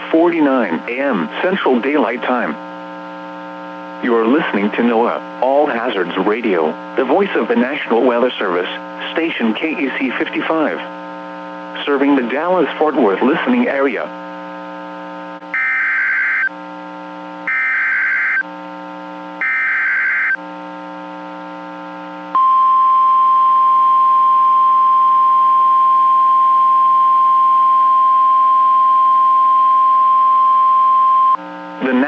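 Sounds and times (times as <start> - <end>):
steady hum: 0.0 - 32.0
steady warning alarm tone: 15.5 - 16.5, 17.5 - 18.5, 19.4 - 20.4
buzzy header data bursts: 15.5 - 16.6, 17.4 - 18.4, 19.4 - 20.4.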